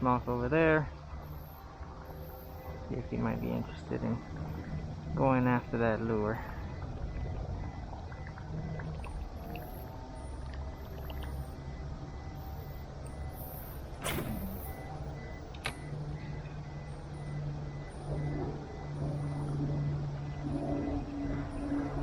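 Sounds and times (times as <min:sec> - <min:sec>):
low motor hum: 0:00.0 - 0:22.0
sharp falling swish: 0:14.0 - 0:14.6.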